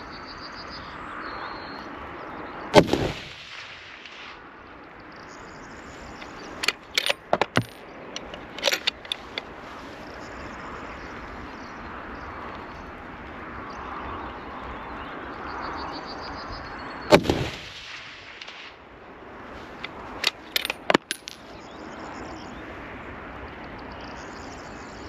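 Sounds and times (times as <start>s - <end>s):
rifle shot: 2.8s - 3.7s, 17.1s - 18.7s
sharp clicks and knocks: 6.2s - 9.5s, 19.8s - 21.5s.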